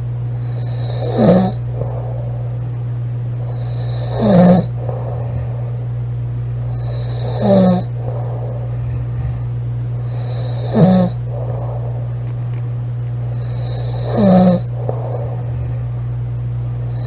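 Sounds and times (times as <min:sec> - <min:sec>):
steady low hum: 0:00.0 - 0:17.0
woman snoring loudly: 0:00.4 - 0:02.1, 0:03.4 - 0:05.6, 0:06.7 - 0:09.4, 0:10.0 - 0:11.9, 0:13.3 - 0:15.7.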